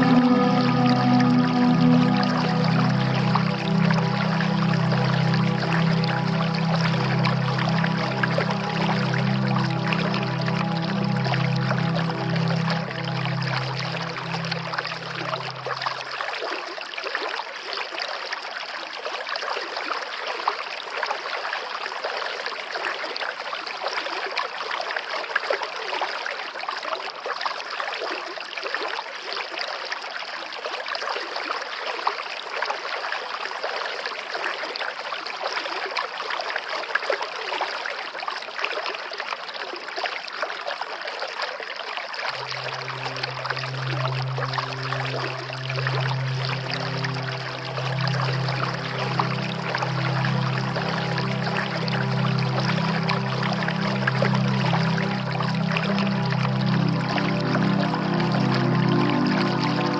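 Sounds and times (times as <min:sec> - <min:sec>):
low steady hum: 0:00.0 - 0:16.2, 0:42.3 - 0:59.9
stream water flowing: 0:00.0 - 0:59.9.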